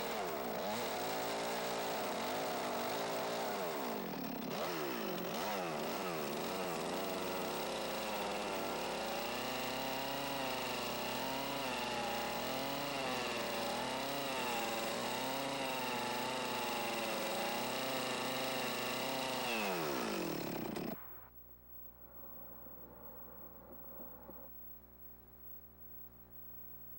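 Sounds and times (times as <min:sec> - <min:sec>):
chainsaw cutting wood: 0:00.0 - 0:21.0.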